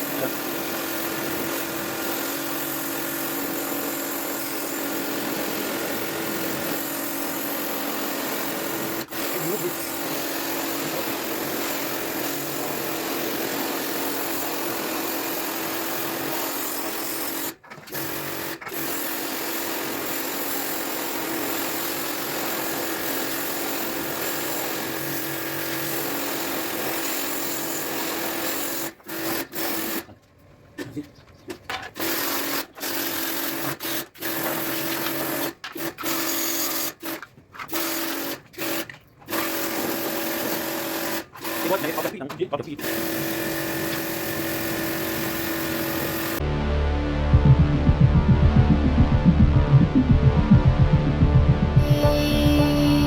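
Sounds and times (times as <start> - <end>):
small electric motor humming: 51.8 - 53.0.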